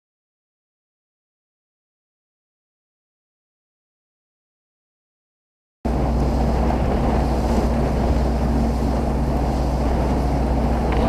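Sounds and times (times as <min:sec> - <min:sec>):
boat engine running: 0:05.9 - 0:11.0
water noise: 0:05.9 - 0:11.0
wind: 0:05.9 - 0:11.0.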